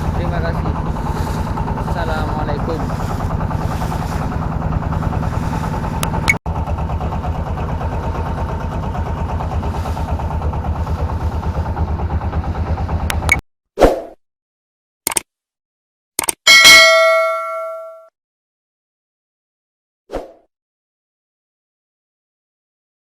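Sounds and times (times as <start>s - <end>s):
boat engine pulsing: 0.0s - 13.4s.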